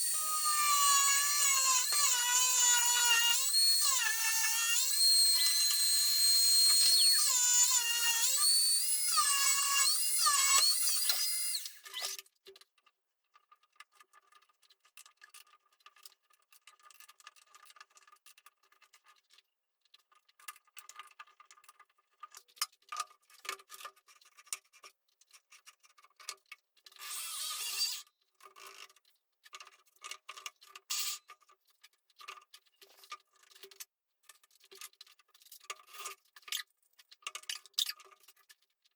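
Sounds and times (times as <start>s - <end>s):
power tool motor whining: 0.0s - 12.2s.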